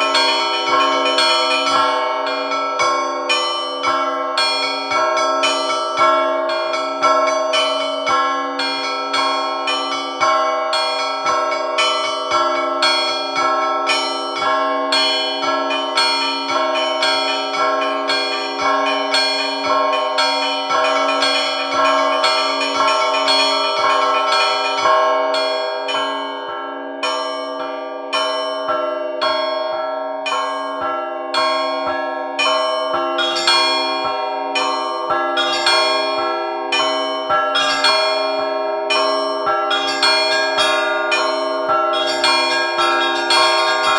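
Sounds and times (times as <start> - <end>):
low bell ringing tone: 0.0 - 8.0, 8.8 - 26.4
quick strikes on small bells: 0.0 - 26.4, 32.4 - 43.9.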